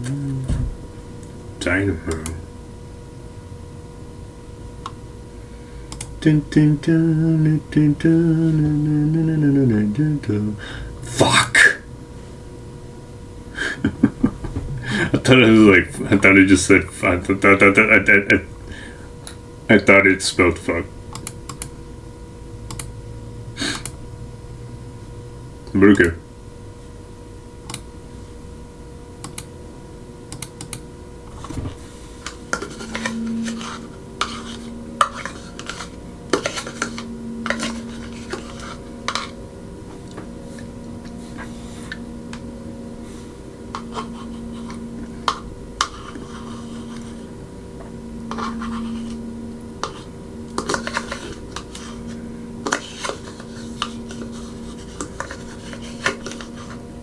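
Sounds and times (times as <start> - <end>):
low pulsing hum: 0.0 - 19.8, 20.5 - 57.0
keyboard and mouse clicks: 21.1 - 21.7, 22.7 - 22.9, 23.7 - 24.0, 29.2 - 29.5, 30.3 - 30.8
spoon scraping plastic cup: 31.3 - 39.4, 43.8 - 47.3, 48.3 - 49.2, 49.8 - 56.8.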